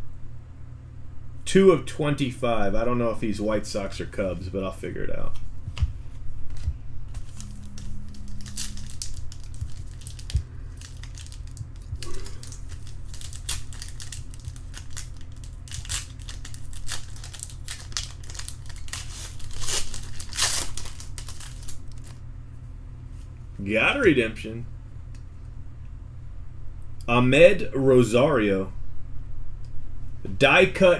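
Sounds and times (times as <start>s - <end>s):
steady low hum: 0.0s - 30.9s
wrappers crinkling and tearing: 7.2s - 22.2s.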